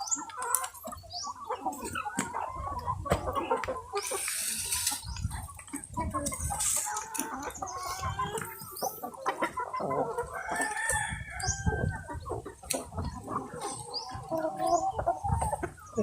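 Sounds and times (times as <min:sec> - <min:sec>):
chickens clucking: 0:00.0 - 0:16.0
rooster crowing: 0:10.4 - 0:11.9.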